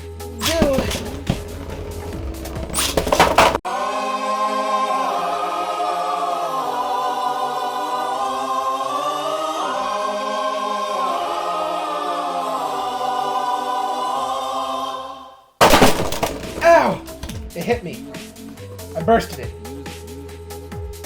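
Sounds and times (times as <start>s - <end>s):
choir singing sustained chords: 3.7s - 15.3s.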